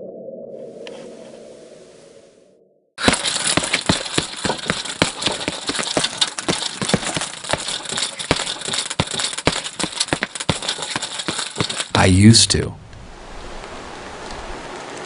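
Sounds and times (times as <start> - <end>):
rattling clatter of clicks: 3.0 - 11.9.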